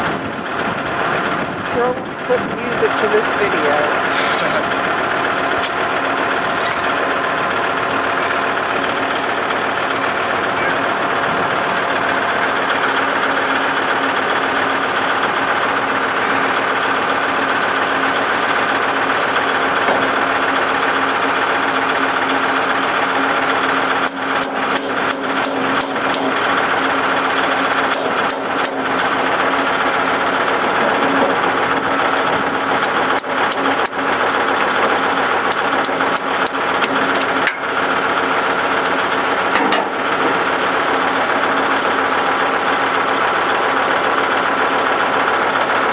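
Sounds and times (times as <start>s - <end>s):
tractor engine running: 0.0s - 45.9s
sharp clicks: 24.0s - 26.4s, 32.8s - 34.0s, 35.5s - 37.6s.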